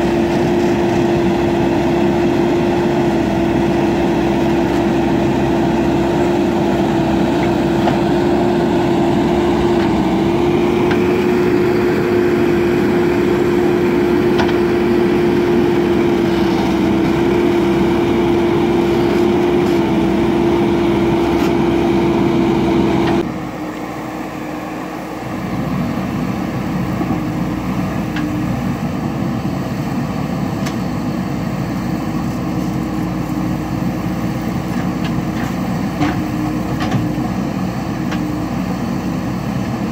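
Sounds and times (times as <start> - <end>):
diesel engine running hard: 0.0 - 39.9.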